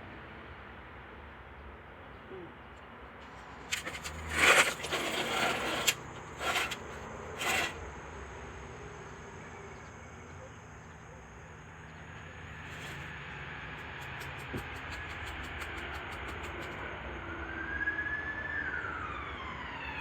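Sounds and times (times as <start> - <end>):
tools scraping and rustling: 3.2 - 7.8.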